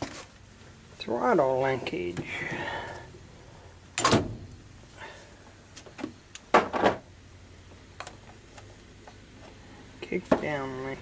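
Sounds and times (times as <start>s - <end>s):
loud metal clunks: 4.0s - 4.6s.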